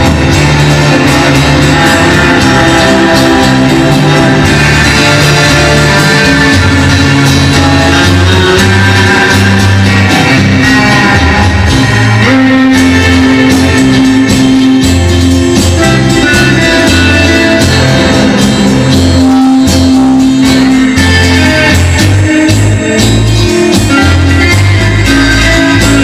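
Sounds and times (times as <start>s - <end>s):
rock and roll band playing: 0.0s - 26.0s.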